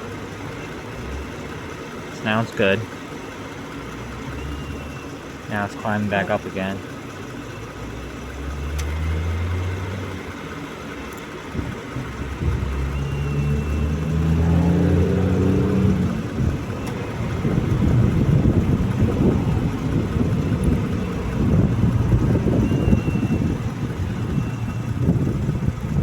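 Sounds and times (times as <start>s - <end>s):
car engine running: 0.0s - 26.0s
air conditioning compressor cycling: 15.5s - 26.0s.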